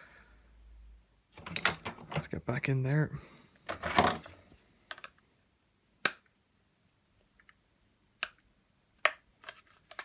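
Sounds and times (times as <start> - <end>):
plastic parts clicking: 3.7 - 5.2.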